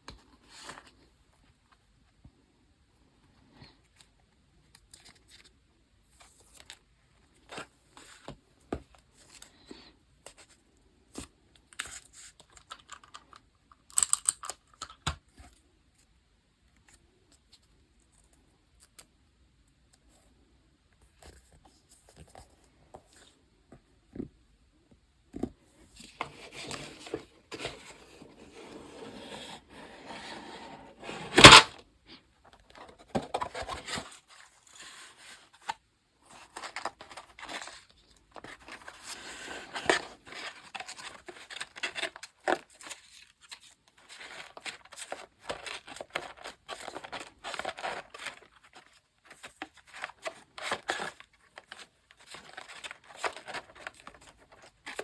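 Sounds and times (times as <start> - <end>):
paper rustling and crinkling: 31.3 - 31.7, 32.6 - 55.0
paper tearing: 31.3 - 31.7.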